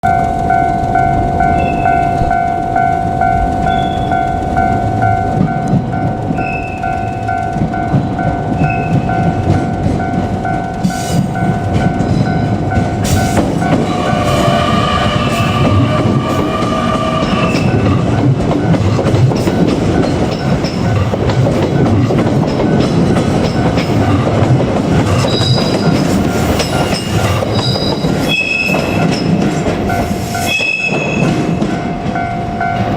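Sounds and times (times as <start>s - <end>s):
high ringing tones: 0.0s - 18.8s
electric train rumble: 0.0s - 32.9s
two-tone crossing bell clanging: 0.0s - 32.9s.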